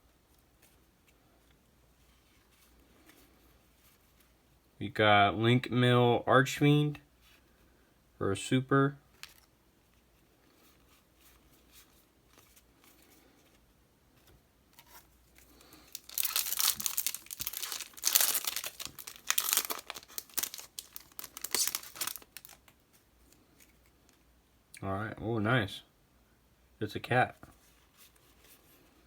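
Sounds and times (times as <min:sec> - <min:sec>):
faint handling: 0:09.1 - 0:24.3
foil wrapper crinkling and tearing: 0:15.4 - 0:22.8.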